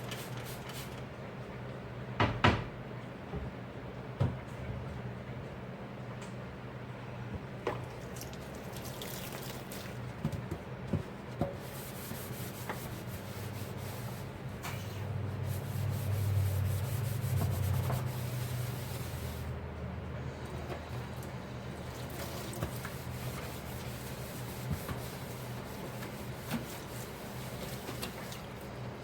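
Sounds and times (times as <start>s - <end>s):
dish being scrubbed: 10.9s - 19.5s, 22.1s - 28.6s.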